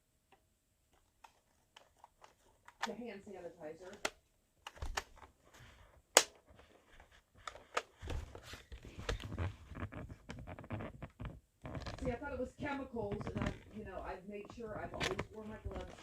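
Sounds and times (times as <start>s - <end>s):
sharp loud plastic snap: 6.1s - 6.4s.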